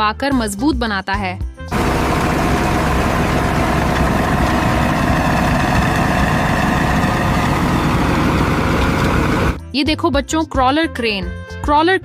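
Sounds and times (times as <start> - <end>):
road roller engine rumbling: 1.7 - 9.6.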